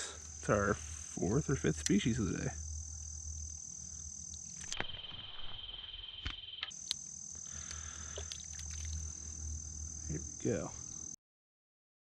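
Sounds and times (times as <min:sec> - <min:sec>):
insects trilling high: 0:00.0 - 0:11.2
low pulsing insect trill: 0:00.0 - 0:11.2
sharp clicks: 0:01.8 - 0:02.0, 0:04.3 - 0:09.0.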